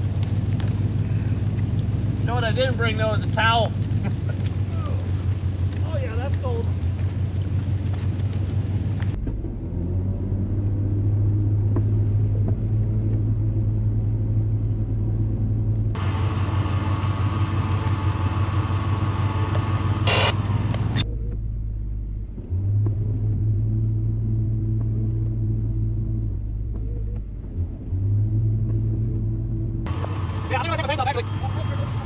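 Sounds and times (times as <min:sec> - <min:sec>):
truck engine rumbling: 0:00.0 - 0:32.0
hissy noise: 0:16.0 - 0:21.0.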